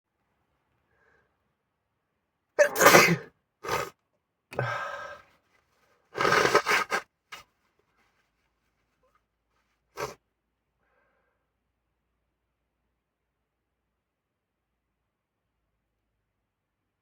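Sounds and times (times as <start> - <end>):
person sneezing: 2.6 - 3.9, 4.6 - 5.2, 6.2 - 7.0, 10.0 - 10.2
breathy sounds: 4.6 - 5.3.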